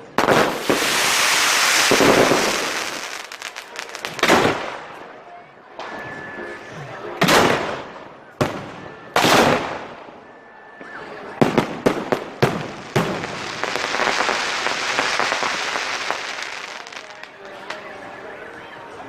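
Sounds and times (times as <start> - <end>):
hissing firework crackle: 0.0 - 4.8, 11.6 - 17.9
sharp firework cracks: 0.0 - 4.8, 11.4 - 17.9
fireworks bangs: 0.0 - 5.0, 7.2 - 10.2, 10.8 - 18.1.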